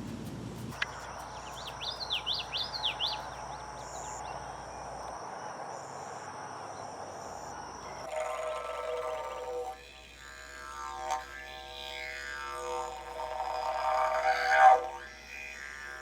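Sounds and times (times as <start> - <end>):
high-pitched insect drone: 0.0 - 16.0
steady hiss: 0.0 - 16.0
bird chirping: 0.6 - 4.5.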